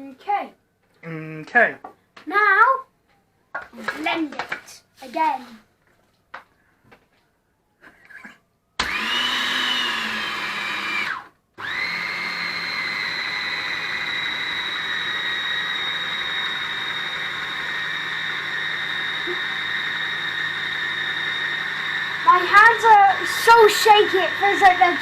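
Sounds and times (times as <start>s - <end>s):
electric blender motor whine: 8.8s - 25.0s.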